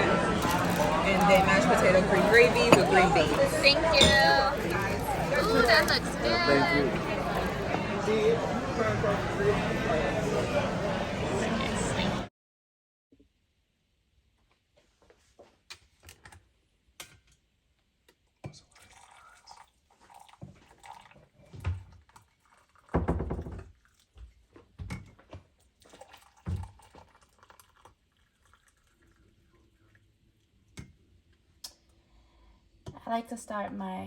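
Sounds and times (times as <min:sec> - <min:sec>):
liquid pouring: 0:00.0 - 0:08.1, 0:18.4 - 0:24.6, 0:25.6 - 0:30.8
dishes knocking: 0:00.7 - 0:06.2.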